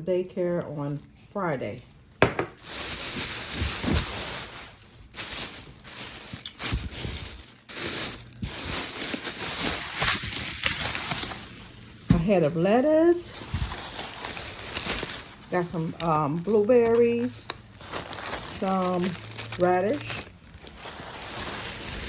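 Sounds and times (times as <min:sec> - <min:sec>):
plastic bags rustling: 0:00.4 - 0:22.0
short knocks of groceries: 0:02.2 - 0:02.7.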